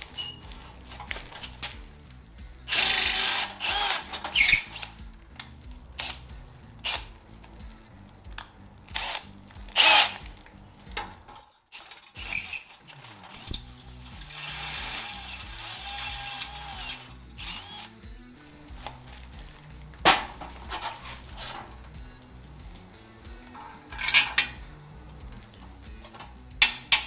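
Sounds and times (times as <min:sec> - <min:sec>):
background music: 0:00.0 - 0:27.0
electric drill boring through steel: 0:02.7 - 0:04.9, 0:12.2 - 0:12.8, 0:14.2 - 0:17.9.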